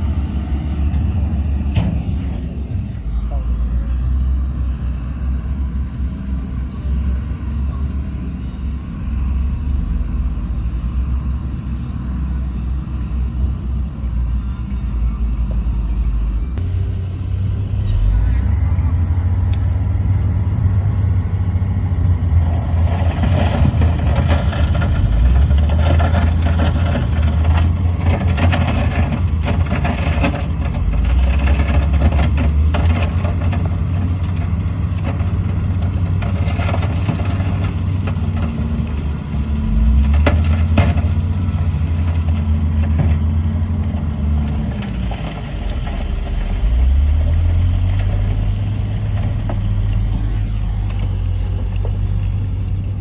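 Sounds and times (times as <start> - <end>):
heavy diesel engine revving: 0.0 - 53.0
metal clanks and rattles: 22.9 - 53.0.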